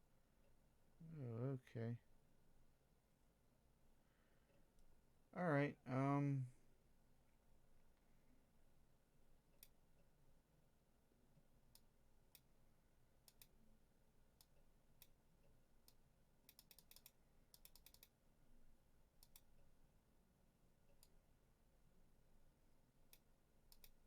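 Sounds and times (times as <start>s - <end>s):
computer mouse clicking: 13.2s - 13.6s, 15.8s - 18.2s, 19.2s - 19.5s, 23.1s - 24.0s.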